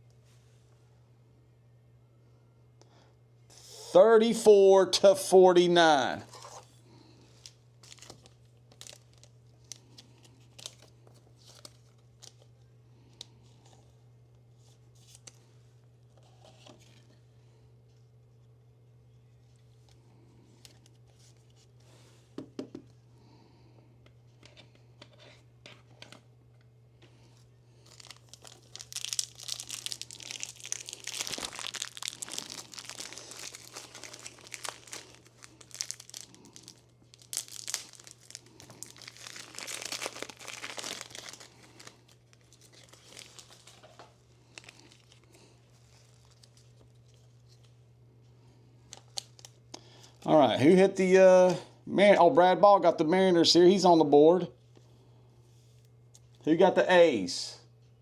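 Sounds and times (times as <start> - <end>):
steady low hum: 0.0 - 58.0
plastic packaging crinkling and tearing: 6.3 - 12.5, 27.8 - 47.7, 48.9 - 50.2.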